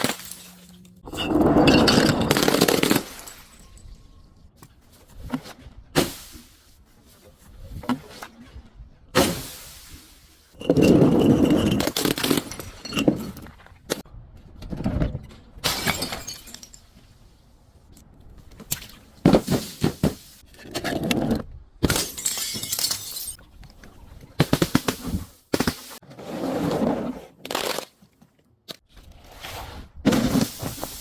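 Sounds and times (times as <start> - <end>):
glass bottles breaking: 0.0 - 4.4, 15.6 - 17.0, 21.8 - 23.4.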